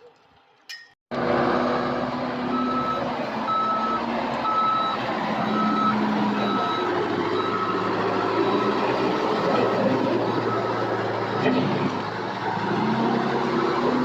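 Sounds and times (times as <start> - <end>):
diesel engine running: 1.1 - 14.0
excavator travel alarm beeping: 2.5 - 11.0.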